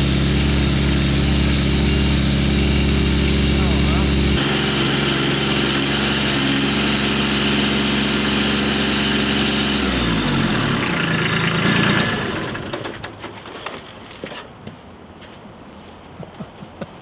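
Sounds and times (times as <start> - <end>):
tractor diesel engine running: 4.3 - 13.6.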